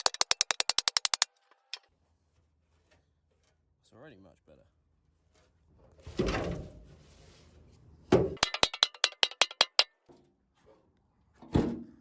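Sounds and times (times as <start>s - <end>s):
sharp ringing taps: 0.0s - 1.3s, 8.4s - 9.9s.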